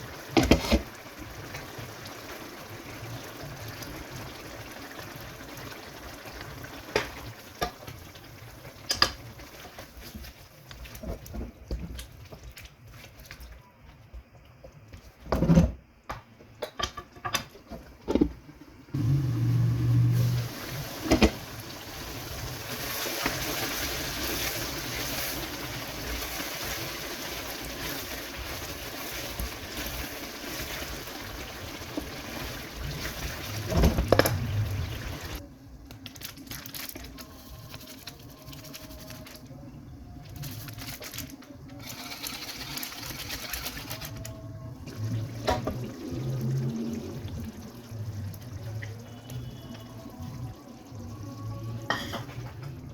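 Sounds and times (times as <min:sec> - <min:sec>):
food sizzling in a pan: 0:00.0 - 0:12.0, 0:18.9 - 0:35.4, 0:40.4 - 0:52.5.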